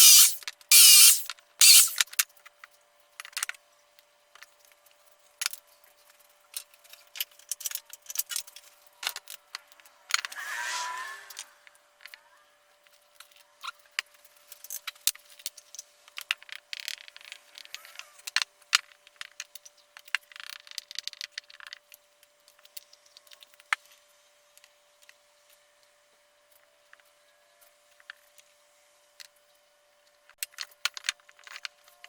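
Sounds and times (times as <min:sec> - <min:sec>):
scraping strokes on wood: 0:00.0 - 0:02.0
tools clicking and knocking: 0:00.0 - 0:02.0.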